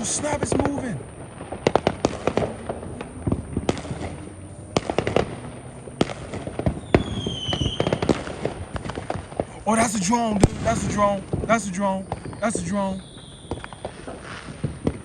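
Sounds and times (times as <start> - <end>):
falling firework whistle: 0.0 - 15.0
firecrackers popping and banging: 0.0 - 15.0.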